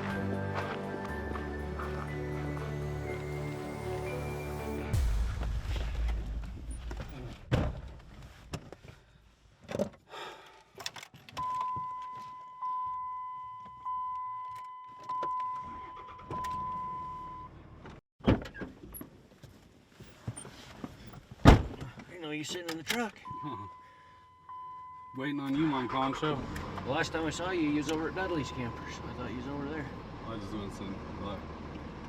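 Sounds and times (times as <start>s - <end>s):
truck warning chime dinging: 27.3s - 29.6s.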